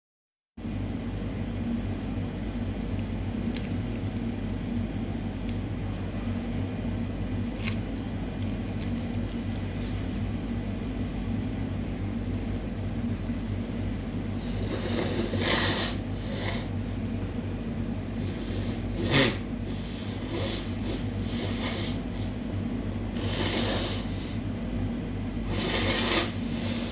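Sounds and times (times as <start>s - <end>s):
steady low hum: 0.6s - 26.9s
person sniffling with a cold: 14.4s - 17.0s, 18.2s - 22.4s, 23.2s - 24.5s, 25.4s - 26.9s.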